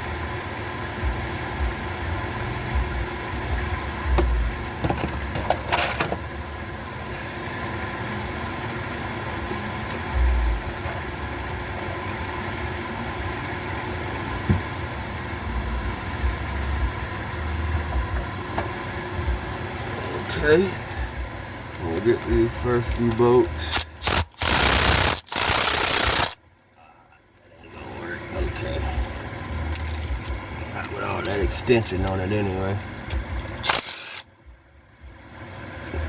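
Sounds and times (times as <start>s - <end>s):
mechanical hum: 0.0s - 36.0s
sharp clicks: 23.7s - 26.4s, 33.1s - 34.2s.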